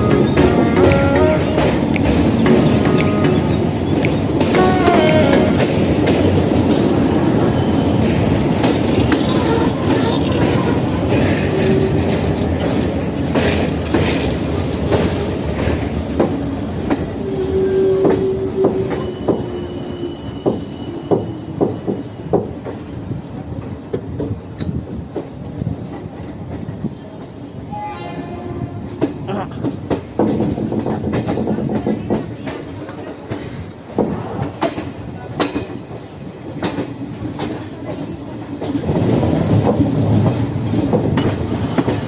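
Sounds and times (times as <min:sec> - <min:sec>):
clacks over rail joints: 0:00.0 - 0:17.2, 0:17.8 - 0:27.4, 0:28.9 - 0:42.0
train rumbling on rails: 0:00.0 - 0:42.0
train wheels squealing: 0:06.7 - 0:12.4, 0:13.2 - 0:24.6.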